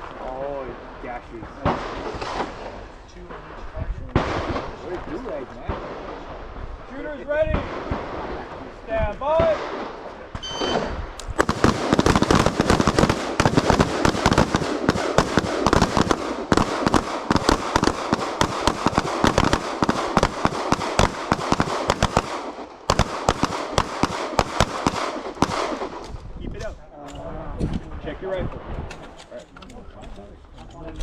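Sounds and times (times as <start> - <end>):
rapid overlapping gunfire: 0.0 - 10.4, 11.3 - 26.3
electronic shot timer beep: 10.4 - 10.9.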